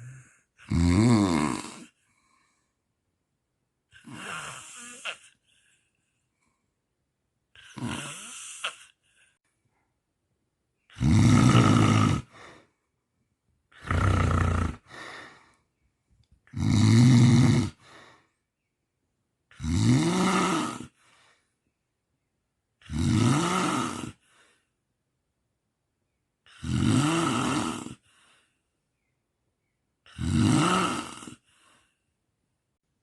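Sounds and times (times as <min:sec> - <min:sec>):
person snoring: 0:00.0 - 0:02.0, 0:03.9 - 0:05.4, 0:07.6 - 0:09.0, 0:10.9 - 0:12.7, 0:13.7 - 0:15.5, 0:16.5 - 0:18.2, 0:19.5 - 0:21.0, 0:22.8 - 0:24.4, 0:26.5 - 0:28.2, 0:30.1 - 0:31.6.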